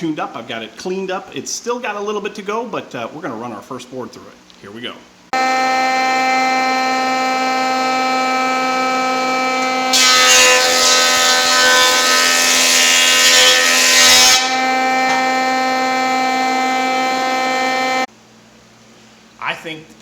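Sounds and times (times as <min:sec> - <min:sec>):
electric planer whining: 0:05.4 - 0:18.1
planer cutting wood rasping: 0:05.4 - 0:18.1.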